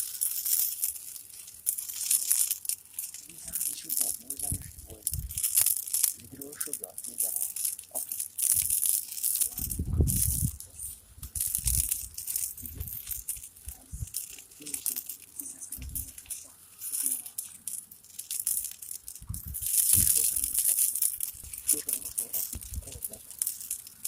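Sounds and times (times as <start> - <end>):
fire crackling: 0.0 - 24.0
low thumps: 19.2 - 20.2.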